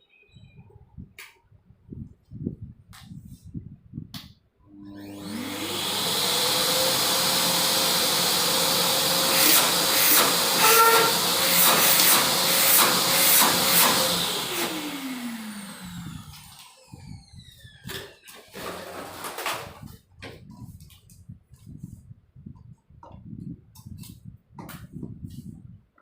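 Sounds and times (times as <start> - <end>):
vacuum cleaner motor whine: 4.7 - 19.5.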